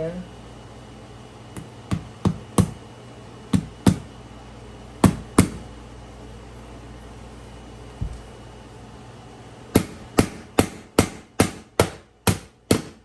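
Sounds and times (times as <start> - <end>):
hammer striking nail: 1.6 - 2.8, 3.5 - 4.1, 5.0 - 5.6, 9.7 - 13.0.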